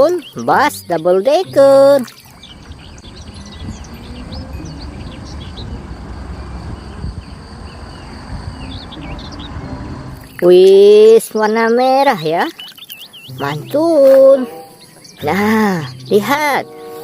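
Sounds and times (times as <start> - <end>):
small birds chirping: 0.0 - 17.0
steady low rumbling: 1.6 - 10.4.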